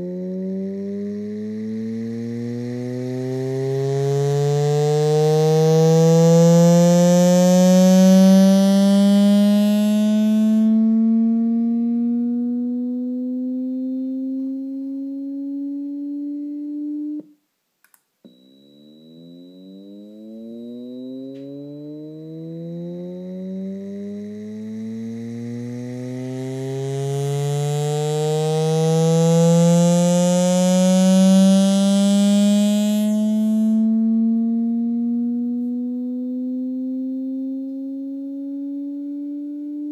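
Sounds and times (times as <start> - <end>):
laptop vibrating: 0.0 - 10.7, 18.3 - 33.9
rising test tone: 0.0 - 17.4, 18.2 - 39.9
harsh buzzing rattle: 23.5 - 28.2.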